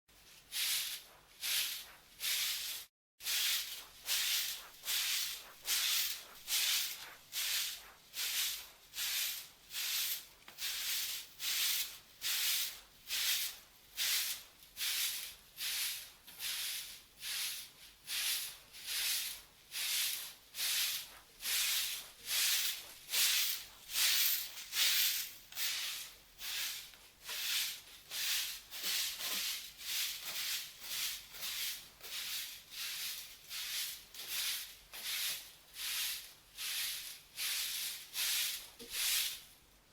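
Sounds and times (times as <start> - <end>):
stiff broom sweeping: 0.1 - 39.6.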